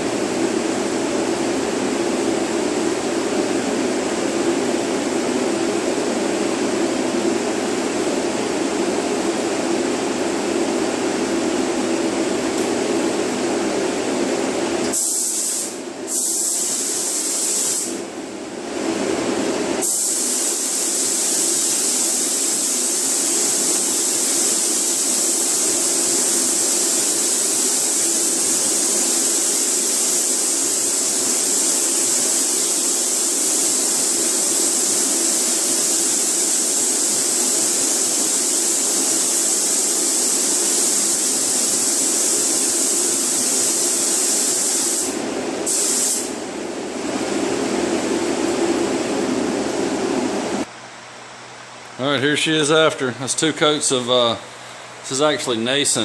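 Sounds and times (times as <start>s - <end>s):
ventilation air rush: 0.0s - 56.0s
spray gun hissing: 14.9s - 18.0s, 19.8s - 46.4s.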